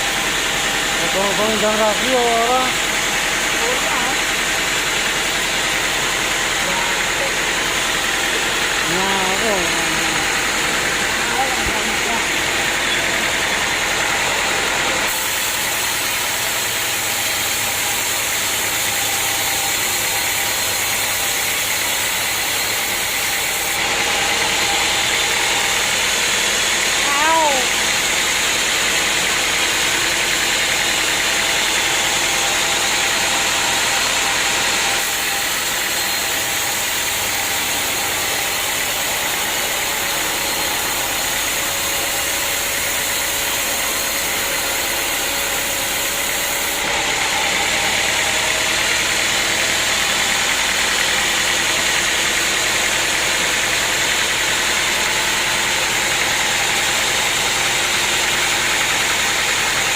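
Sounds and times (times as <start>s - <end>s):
sawmill machinery running: 0.0s - 59.9s.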